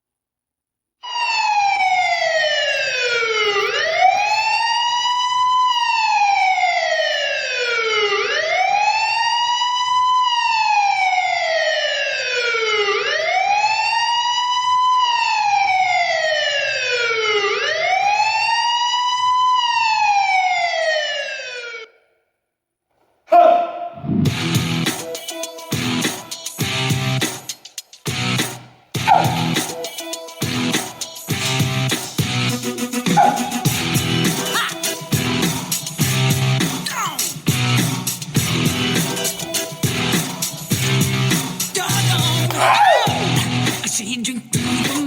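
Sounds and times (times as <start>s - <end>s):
siren wailing: 1.0s - 22.0s, 29.0s - 43.9s.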